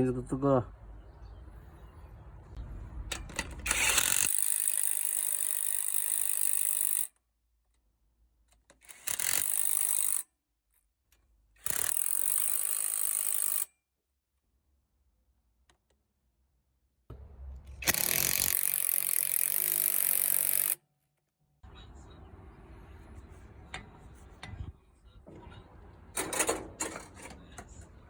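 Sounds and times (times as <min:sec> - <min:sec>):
hand-held mechanical tool running: 0:03.6 - 0:07.0, 0:17.8 - 0:20.8.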